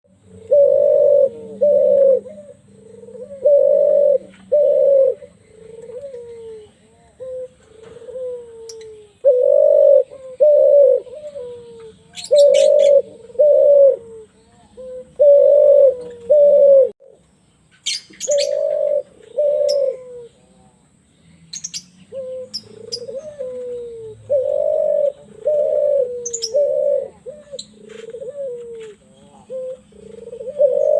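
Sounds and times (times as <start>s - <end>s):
dove cooing: 0.1s - 17.2s, 18.1s - 20.7s, 21.6s - 30.9s
small birds chirping: 0.1s - 30.9s.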